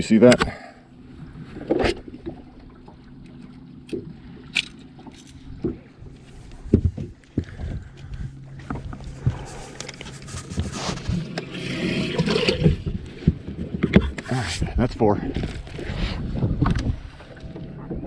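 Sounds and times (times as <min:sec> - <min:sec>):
steady low hum: 0:00.0 - 0:18.0
fishing gear knocking and clattering: 0:03.8 - 0:05.7.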